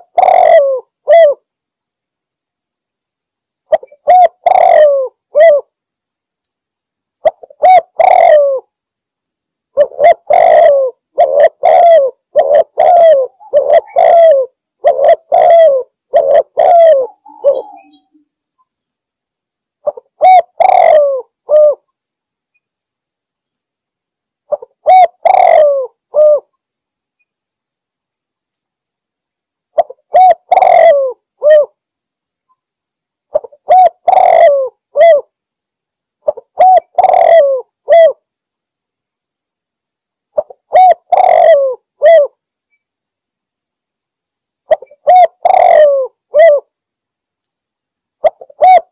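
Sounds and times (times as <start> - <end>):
dove cooing: 0.0 - 1.4, 3.7 - 5.7, 7.2 - 8.7, 9.8 - 18.1, 19.8 - 21.8, 24.5 - 26.5, 29.8 - 31.8, 33.3 - 35.3, 36.2 - 38.2, 40.4 - 42.4, 44.7 - 46.7, 48.2 - 48.9.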